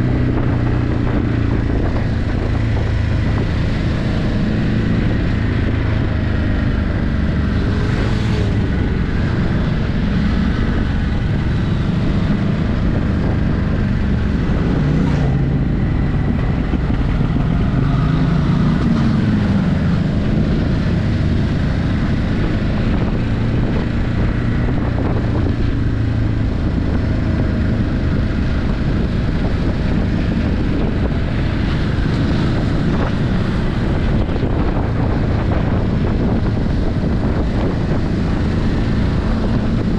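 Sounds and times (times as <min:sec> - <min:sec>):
motorcycle engine while riding: 0:00.0 - 0:39.9
wind buffeting microphone: 0:00.0 - 0:39.9.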